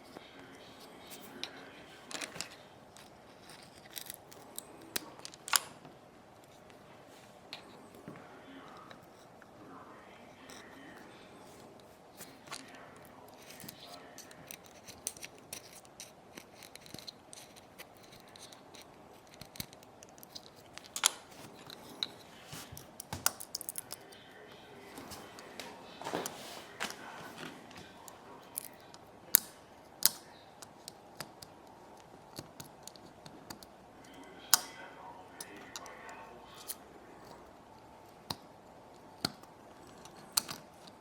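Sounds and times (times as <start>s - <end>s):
tools scraping on metal parts: 12.2s - 24.2s.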